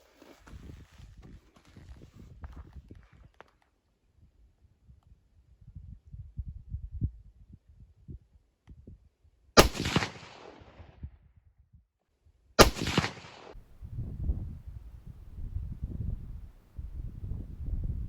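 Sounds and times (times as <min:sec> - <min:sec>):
shotgun shots: 0:09.6 - 0:10.8, 0:12.6 - 0:13.6.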